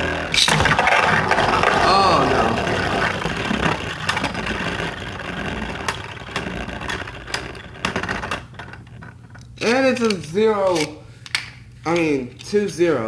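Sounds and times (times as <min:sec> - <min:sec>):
spinning tops whirring: 0:00.3 - 0:10.1
spinning tops clacking together: 0:00.4 - 0:12.6.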